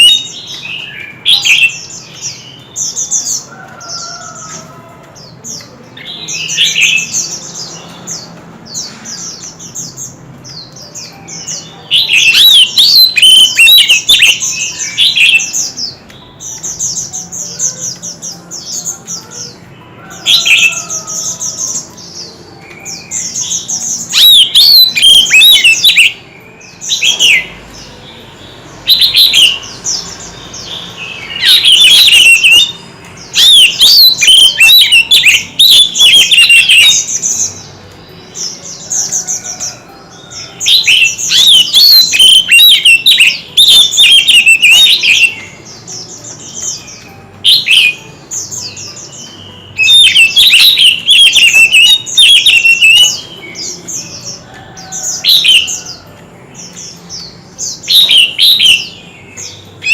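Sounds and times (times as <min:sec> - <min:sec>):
bird singing whistled phrases: 0:11.6 - 0:15.7, 0:22.9 - 0:26.2, 0:31.2 - 0:32.8, 0:33.4 - 0:37.1, 0:40.7 - 0:45.6, 0:49.8 - 0:53.8.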